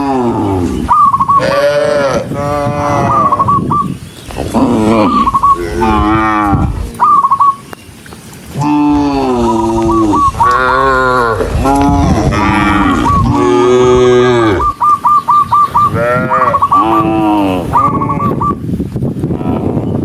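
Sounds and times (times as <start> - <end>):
cattle mooing: 1.4 - 3.4, 4.5 - 7.0, 8.6 - 14.8, 15.9 - 18.4
high trilled notes: 8.9 - 13.5.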